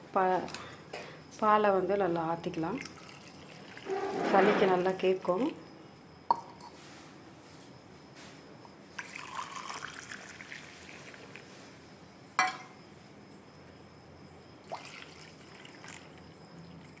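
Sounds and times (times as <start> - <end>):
milk trickling pour: 2.8 - 4.0, 9.0 - 11.4, 14.6 - 16.2
vessel clinking: 12.4 - 12.8.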